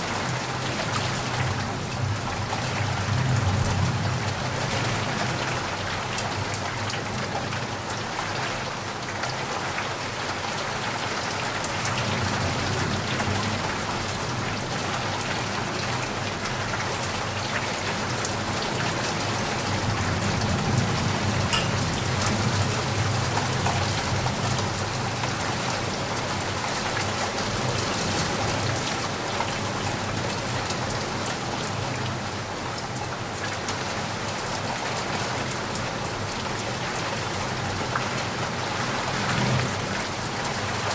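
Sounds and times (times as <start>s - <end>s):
rain pattering: 0.0s - 40.9s.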